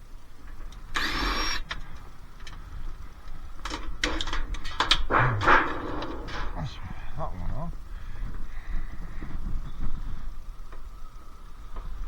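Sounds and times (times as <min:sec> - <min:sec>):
power screwdriver whirring: 0:00.8 - 0:01.8.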